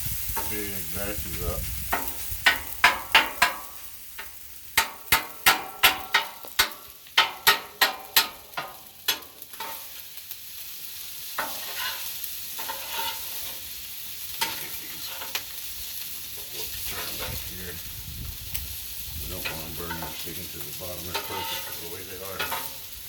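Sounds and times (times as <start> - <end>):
spatula scraping griddle: 0.0 - 10.3, 11.2 - 17.9, 18.5 - 23.0
rice sizzling: 0.0 - 23.0
metal spatulas clacking on griddle: 1.9 - 10.0, 11.4 - 13.6, 14.4 - 15.4, 19.4 - 20.3, 21.0 - 22.9.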